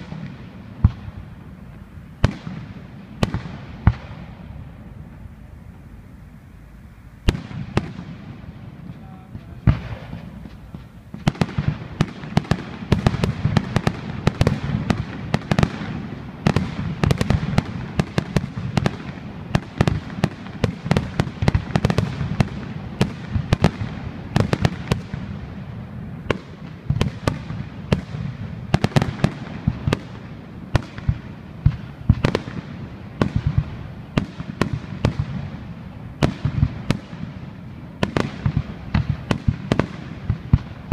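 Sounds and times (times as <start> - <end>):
fireworks bangs and crackles: 0.0 - 40.9.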